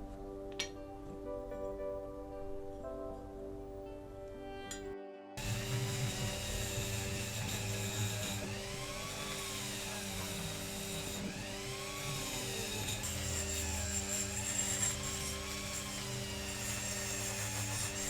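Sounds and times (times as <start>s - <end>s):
rotary wire brush on metal: 5.4s - 18.0s.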